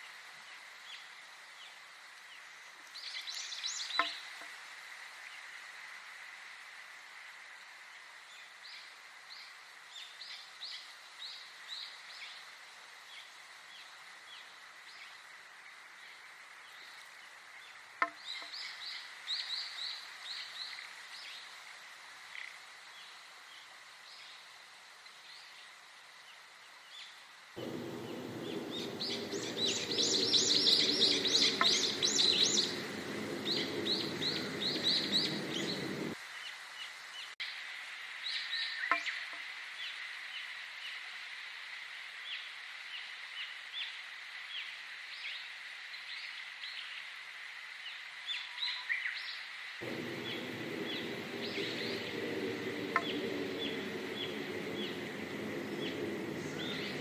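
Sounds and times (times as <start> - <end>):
songbirds chirping and trilling: 27.0 - 36.2, 49.8 - 57.0
low droning: 27.6 - 36.2, 49.8 - 57.0.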